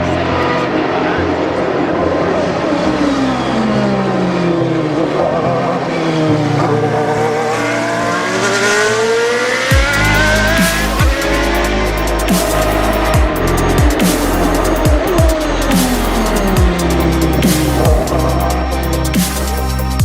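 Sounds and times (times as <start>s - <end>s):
race car engine revving: 0.0s - 20.0s
electronic music with bass: 9.6s - 20.0s.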